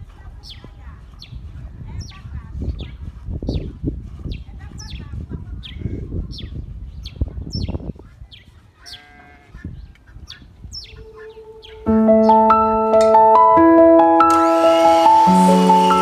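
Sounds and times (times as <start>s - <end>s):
animal bleat: 8.8s - 9.8s
bird chirping: 10.3s - 12.8s.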